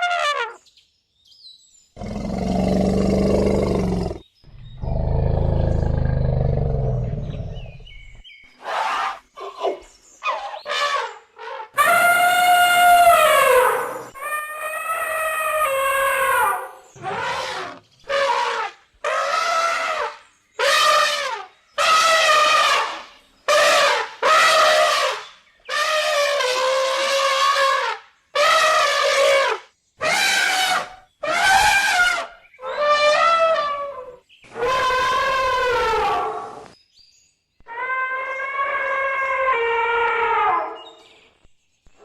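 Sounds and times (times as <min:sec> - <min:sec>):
elephant trumpeting: 0:10.3 - 0:36.7.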